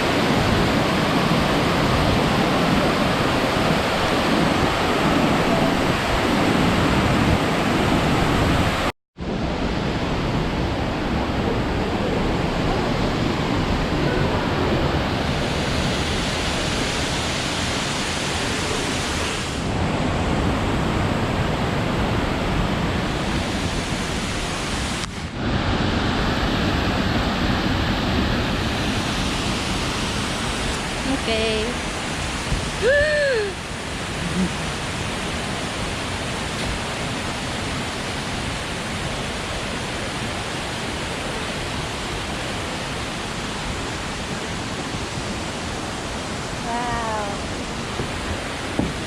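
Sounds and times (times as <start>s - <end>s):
waterfall roaring: 0.0s - 49.0s.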